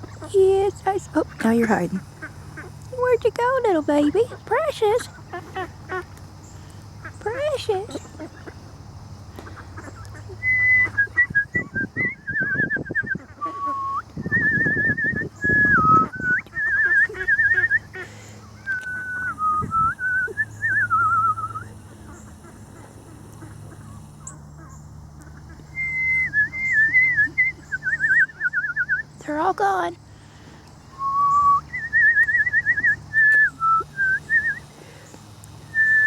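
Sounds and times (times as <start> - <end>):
whistled notes: 10.4 - 17.9, 18.6 - 21.7, 25.7 - 29.1, 30.9 - 34.6, 35.8 - 36.0.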